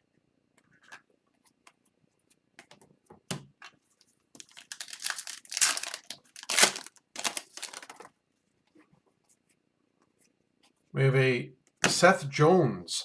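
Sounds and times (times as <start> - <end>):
foil wrapper crinkling and tearing: 4.4 - 8.1.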